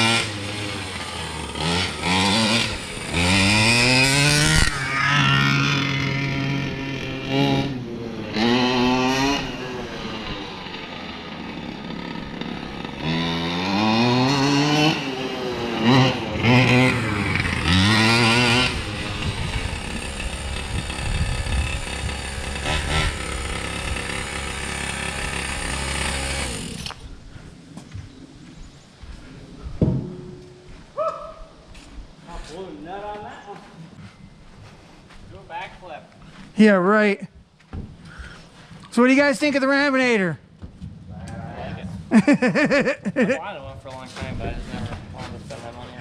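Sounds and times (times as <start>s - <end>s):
two-stroke engine revving: 0.0s - 27.0s.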